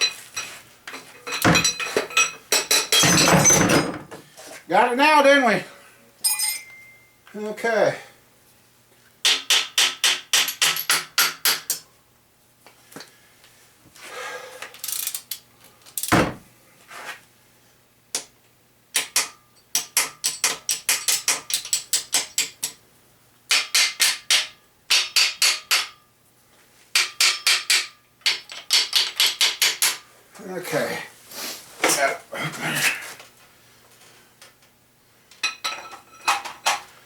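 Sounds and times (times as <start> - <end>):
heavy thud: 16.2 - 16.5.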